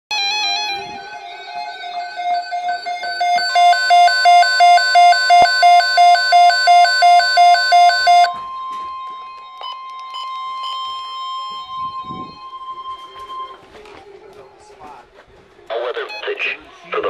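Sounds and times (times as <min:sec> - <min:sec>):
steady alarm tone: 0:00.1 - 0:13.6
electronic alert beeping: 0:00.5 - 0:13.6.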